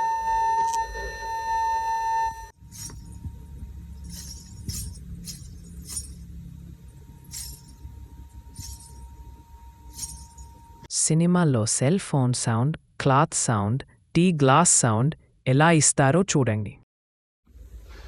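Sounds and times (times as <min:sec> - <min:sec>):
loud held tone: 0:00.0 - 0:10.9
short bright jingling: 0:02.6 - 0:10.8.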